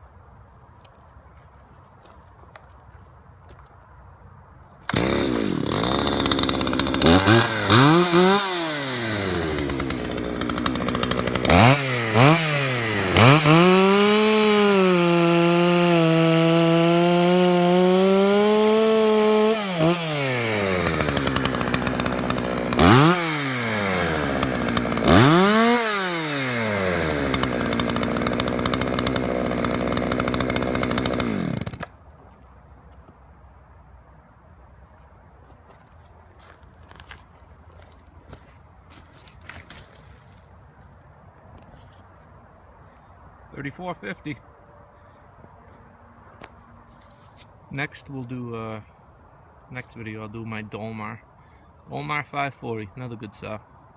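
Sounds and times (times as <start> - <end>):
chainsaw revving: 4.9 - 31.9.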